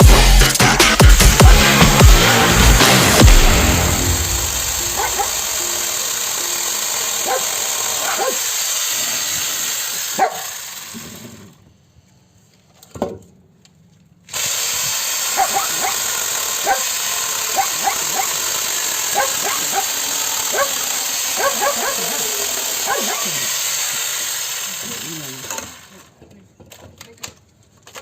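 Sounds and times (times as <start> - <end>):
dogs barking: 4.9 - 5.5, 7.2 - 8.4, 10.2 - 10.5, 15.3 - 16.9, 17.5 - 18.4, 19.1 - 23.5.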